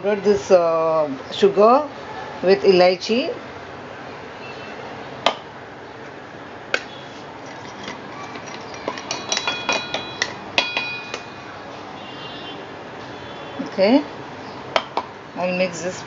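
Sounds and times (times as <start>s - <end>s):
metal utensils clinking on steel: 7.4s - 11.4s.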